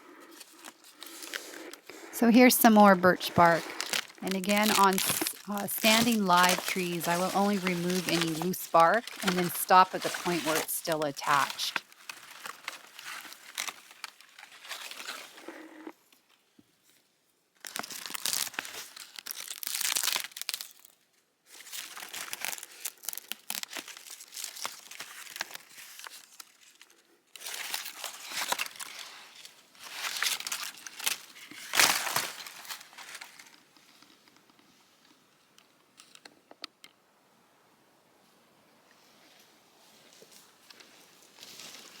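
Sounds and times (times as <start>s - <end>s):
bark being peeled and torn: 3.4s - 15.3s, 17.6s - 21.0s, 21.6s - 33.6s.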